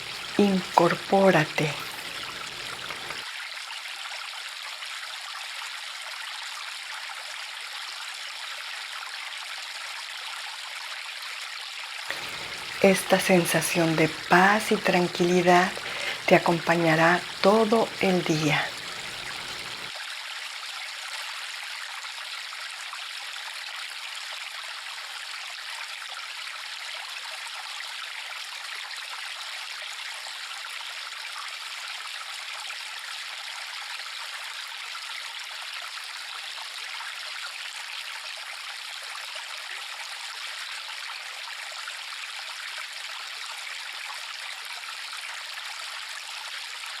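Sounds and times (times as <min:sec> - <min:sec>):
river water flowing: 0:00.0 - 0:03.2, 0:12.1 - 0:19.9.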